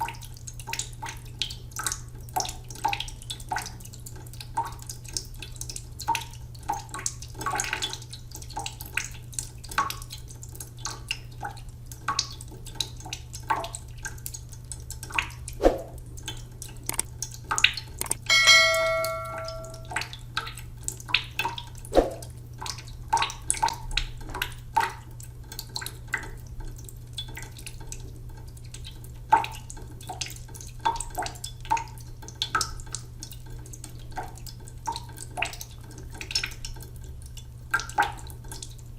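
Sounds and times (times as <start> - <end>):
water dripping: 0.0 - 38.9
bell-like ring: 18.2 - 20.0.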